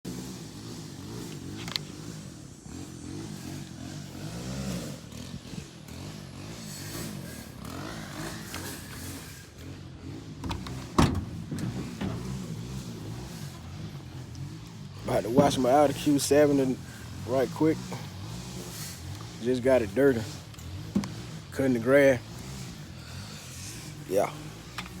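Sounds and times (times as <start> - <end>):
engine running with wavering hum: 0.0 - 25.0.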